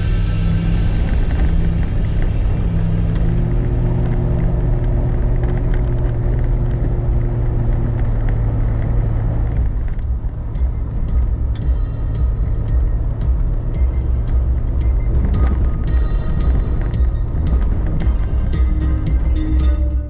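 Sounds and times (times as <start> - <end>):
vehicle engine and tyre drone: 0.0 - 20.0.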